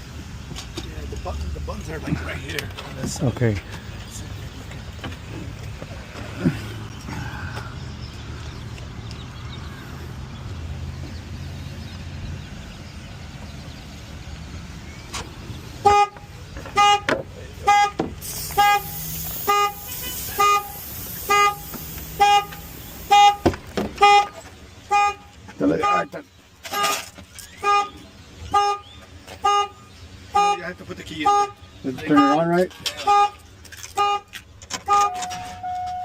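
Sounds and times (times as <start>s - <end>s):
car alarm horn honking: 15.8s - 36.0s.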